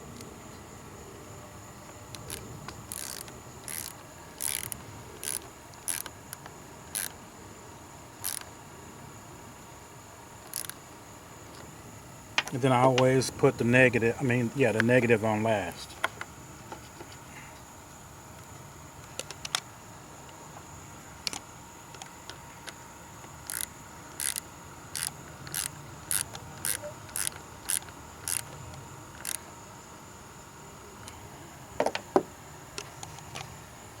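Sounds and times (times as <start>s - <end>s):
ratchet wrench clicking: 2.2s - 7.1s, 8.2s - 8.5s, 10.5s - 10.8s, 23.4s - 28.6s, 29.2s - 29.4s.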